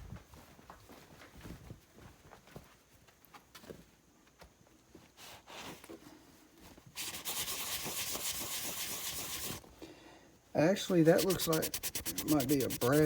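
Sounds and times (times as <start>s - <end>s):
rag scrubbing metal: 7.0s - 9.6s, 11.0s - 13.0s.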